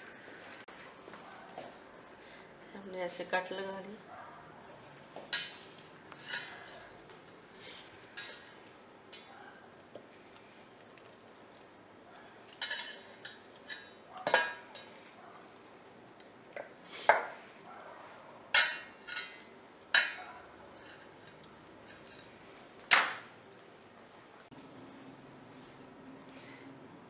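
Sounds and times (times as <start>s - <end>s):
dishes and utensils clinking: 5.2s - 7.5s, 8.1s - 9.5s, 12.2s - 15.2s, 18.6s - 23.3s.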